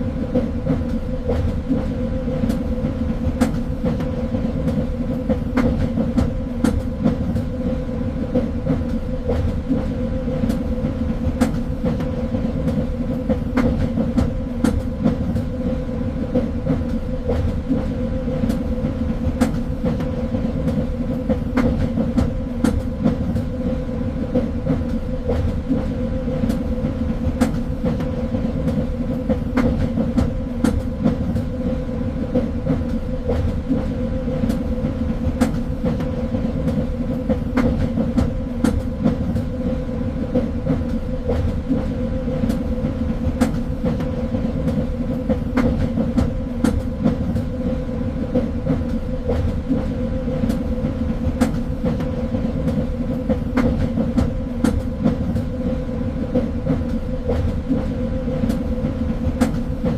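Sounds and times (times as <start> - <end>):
train rumbling on track: 0.0 - 59.9.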